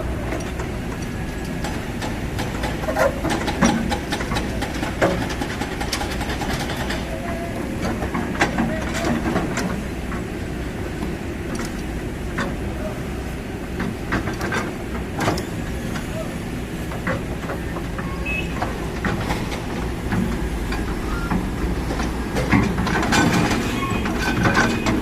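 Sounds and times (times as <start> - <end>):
excavator engine rumble: 0.0 - 25.0
metallic clanks and knocks: 0.3 - 10.3, 16.9 - 25.0.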